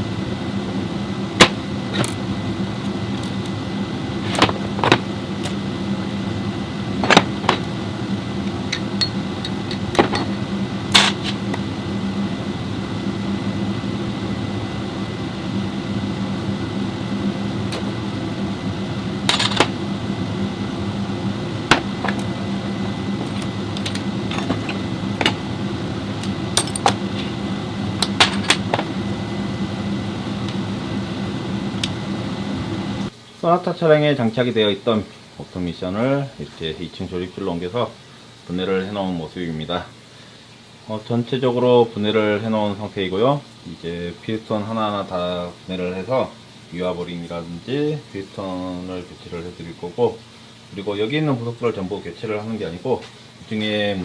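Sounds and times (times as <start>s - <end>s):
mechanical hum: 0.0s - 54.0s
sharp clicks and metallic knocks: 8.5s - 11.4s, 21.7s - 22.3s, 23.2s - 25.4s, 28.0s - 28.9s.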